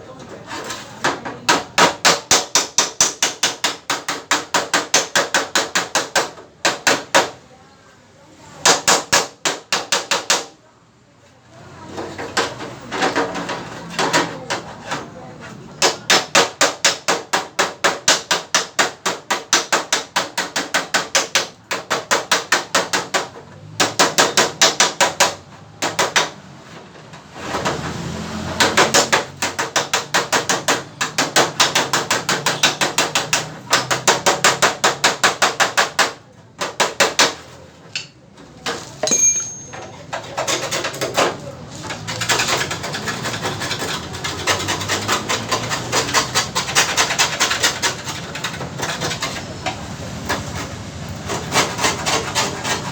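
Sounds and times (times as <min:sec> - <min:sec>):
hammer tapping on metal: 0:28.6 - 0:37.4, 0:39.0 - 0:39.9.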